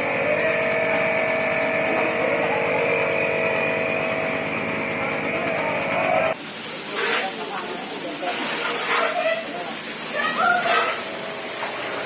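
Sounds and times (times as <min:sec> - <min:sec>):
small engine whining: 0:00.0 - 0:06.4.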